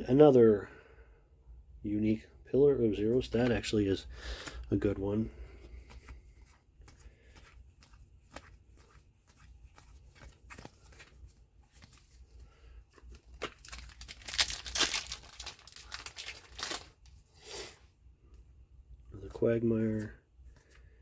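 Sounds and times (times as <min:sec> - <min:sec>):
foil wrapper tearing and crinkling: 0:13.2 - 0:17.0.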